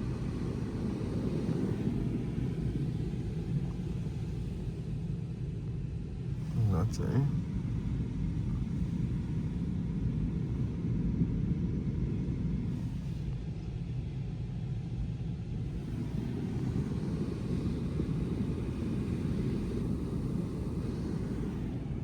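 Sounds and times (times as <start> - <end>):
strong wind buffeting microphone: 0.0 - 6.8, 15.3 - 22.0.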